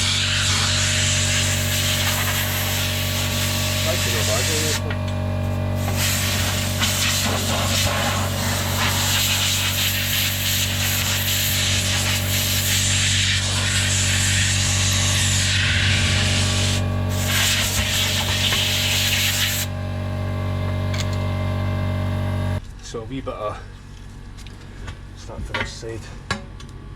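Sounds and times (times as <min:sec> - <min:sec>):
power tool running: 0:00.0 - 0:22.6
abrasive scraping metal rim: 0:12.0 - 0:19.7.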